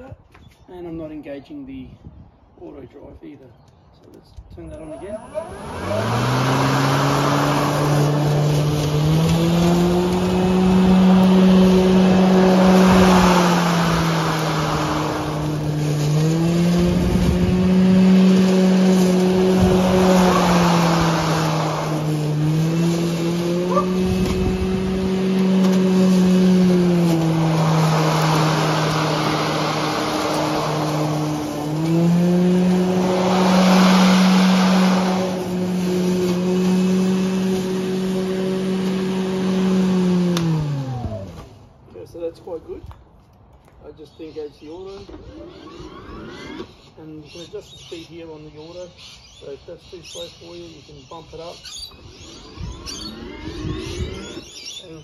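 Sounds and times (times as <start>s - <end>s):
electric lawnmower humming: 4.8s - 41.5s
grass swishing hiss: 5.7s - 40.8s.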